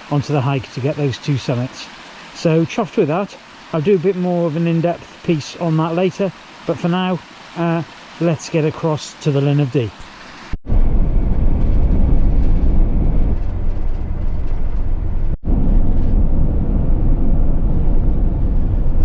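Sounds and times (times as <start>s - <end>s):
van engine and road noise: 12.0s - 15.9s.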